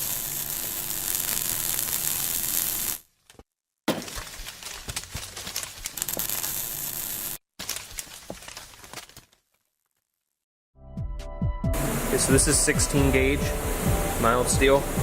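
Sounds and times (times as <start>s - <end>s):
low machine hum: 11.8s - 15.0s.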